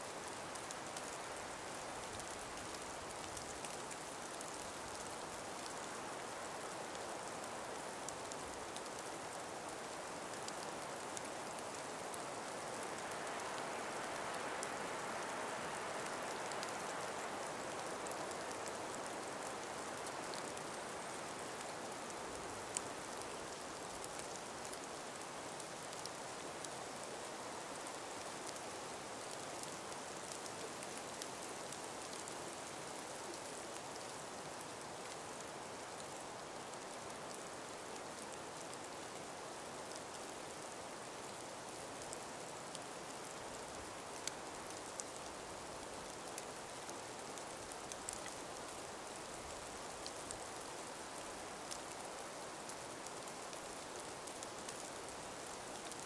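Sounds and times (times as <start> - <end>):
breeze through trees: 0.0 - 56.0
faint ticks: 39.9 - 56.0.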